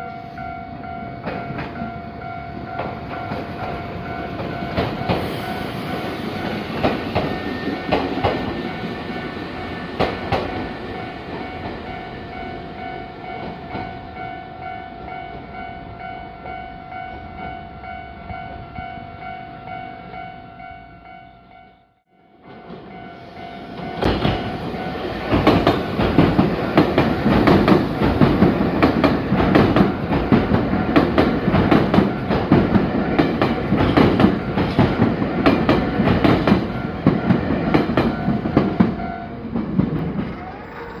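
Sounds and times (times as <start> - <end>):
level crossing warning bell: 0.0 - 28.4, 31.9 - 39.4
train wheels clattering on rails: 1.2 - 14.0, 22.4 - 41.0.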